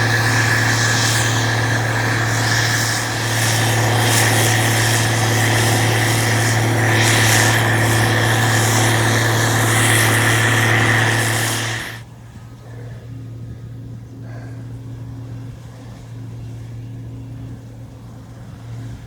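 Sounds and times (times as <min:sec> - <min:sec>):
machine engine humming: 0:00.0 - 0:12.0.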